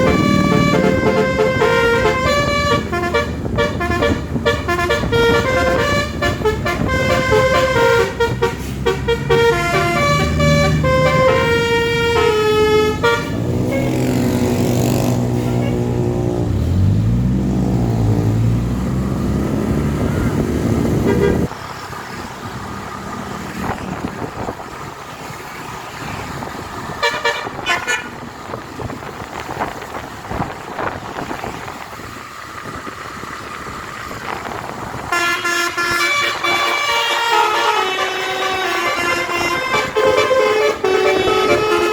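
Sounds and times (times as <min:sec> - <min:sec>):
musical air horn melody: 0:00.0 - 0:14.3, 0:21.0 - 0:21.5, 0:35.1 - 0:41.9
short horn bursts: 0:00.0 - 0:14.3, 0:15.3 - 0:16.0, 0:21.0 - 0:21.5, 0:35.1 - 0:41.9
road and traffic noise: 0:00.0 - 0:41.9.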